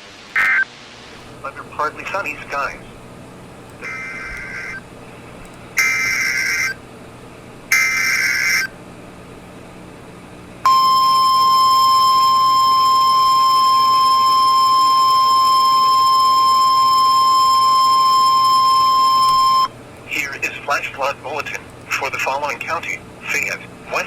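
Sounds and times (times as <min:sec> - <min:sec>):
harsh digital data screech: 0:00.3 - 0:00.7, 0:03.8 - 0:04.8, 0:05.8 - 0:06.8, 0:07.7 - 0:08.7
steady warning alarm tone: 0:03.8 - 0:04.8, 0:05.8 - 0:06.8, 0:07.7 - 0:08.7, 0:10.7 - 0:19.8.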